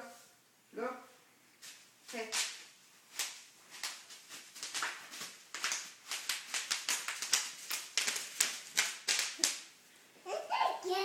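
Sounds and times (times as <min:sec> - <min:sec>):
bubble wrap popping: 0:03.2 - 0:09.8.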